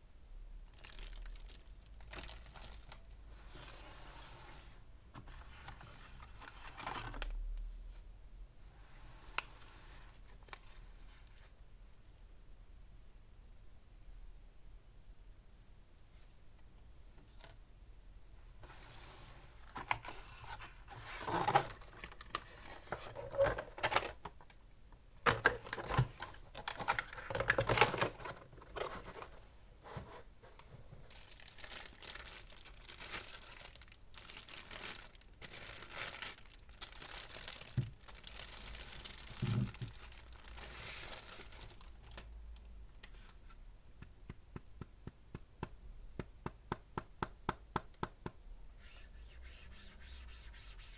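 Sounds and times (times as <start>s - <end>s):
packaging crinkling and tearing: 0.6s - 3.2s, 25.4s - 29.4s, 31.1s - 42.4s.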